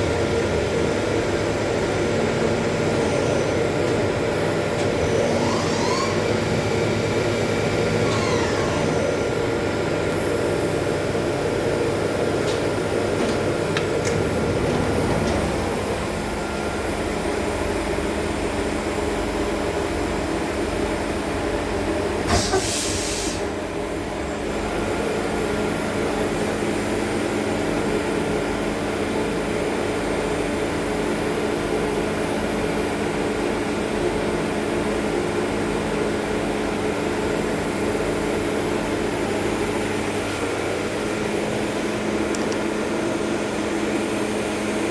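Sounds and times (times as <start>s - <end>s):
lathe humming: 0.0s - 18.8s.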